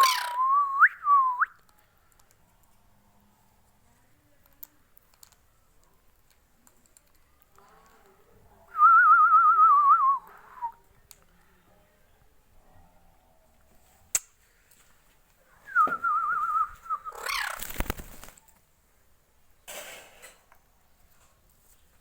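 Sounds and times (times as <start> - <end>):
parrot warbling whistle: 0.0 - 0.5.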